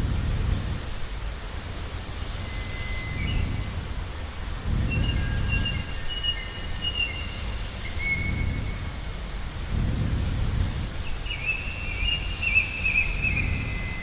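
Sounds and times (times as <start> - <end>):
wind gusting: 0.0 - 14.0
bird chirps and whistle: 9.8 - 14.0.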